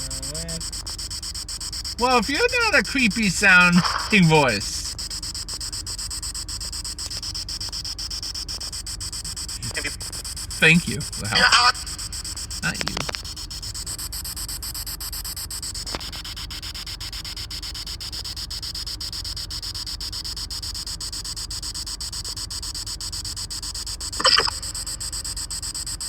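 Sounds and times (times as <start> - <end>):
fast even ticking: 0.0 - 14.0
radio static hiss: 0.0 - 14.0, 24.2 - 25.4.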